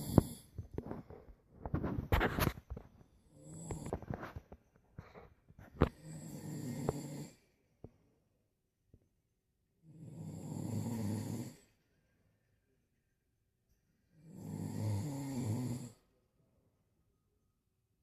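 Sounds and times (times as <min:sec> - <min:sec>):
low snores: 0:00.0 - 0:00.6, 0:03.2 - 0:04.4, 0:05.7 - 0:07.6, 0:09.8 - 0:11.8, 0:14.1 - 0:16.1.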